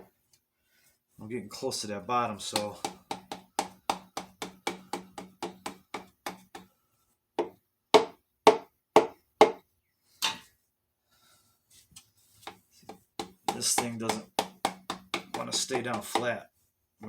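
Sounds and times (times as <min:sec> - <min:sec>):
rubber mallet tapping piston: 0:02.6 - 0:06.7, 0:12.9 - 0:16.3.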